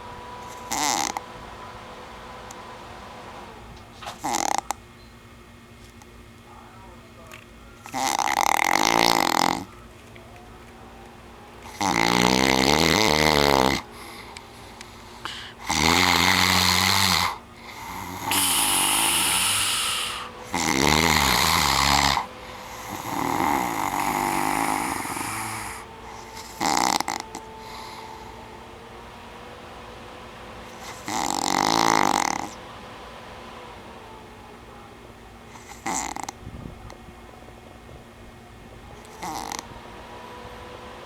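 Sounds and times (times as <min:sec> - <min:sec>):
man snoring loudly: 0:00.0 - 0:01.7, 0:04.0 - 0:04.8, 0:07.9 - 0:09.7, 0:11.6 - 0:28.7, 0:30.6 - 0:32.6, 0:35.6 - 0:36.4, 0:39.2 - 0:39.7.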